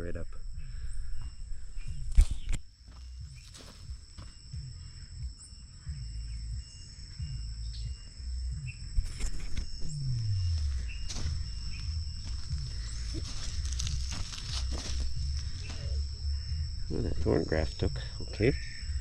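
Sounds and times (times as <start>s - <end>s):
high-pitched insect drone: 0.0s - 19.0s
footsteps among plants: 2.1s - 4.4s, 10.2s - 16.1s
low rumble: 3.1s - 19.0s.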